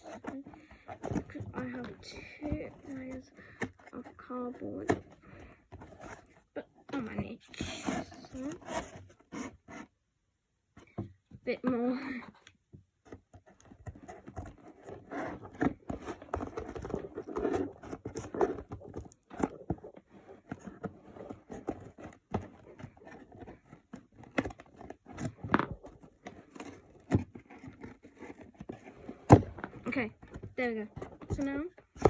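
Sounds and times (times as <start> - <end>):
cardboard being cut and torn: 7.6 - 9.6, 14.0 - 19.7.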